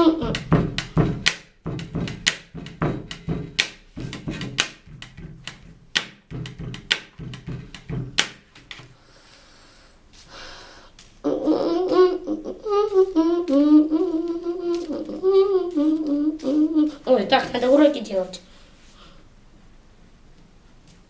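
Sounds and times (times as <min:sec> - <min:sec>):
knocking on wooden desk: 0:00.3 - 0:08.4.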